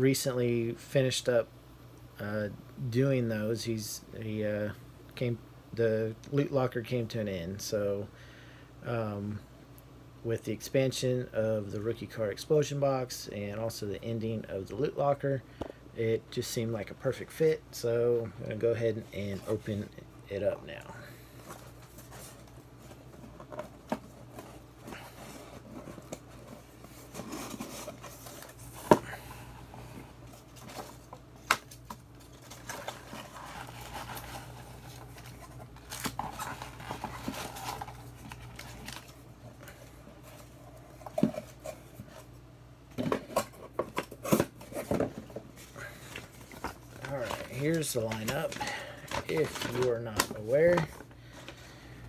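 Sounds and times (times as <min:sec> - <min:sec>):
rustling and scraping of packs: 0:19.0 - 0:52.0.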